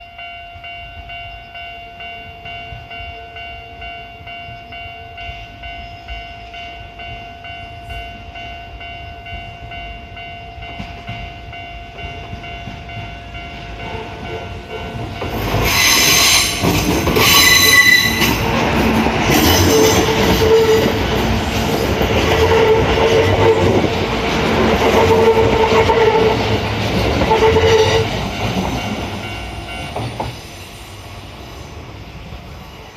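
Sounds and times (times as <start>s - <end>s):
railway crossing alarm ringing: 0.0s - 32.9s
train wheels clattering: 10.6s - 30.9s
train horn blasts: 17.2s - 18.4s, 19.5s - 21.0s, 22.3s - 23.8s, 25.0s - 26.6s, 27.2s - 28.2s.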